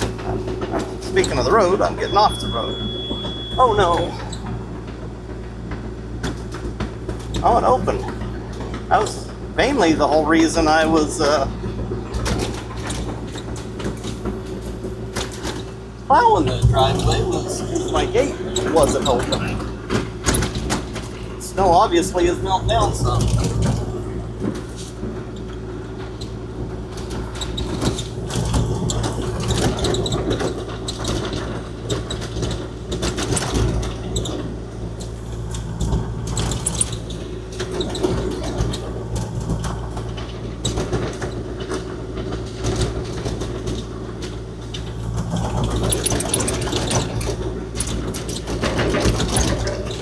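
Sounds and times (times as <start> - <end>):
excavator diesel engine running: 0.0 - 50.0
metal clanks and rattles: 23.0 - 50.0.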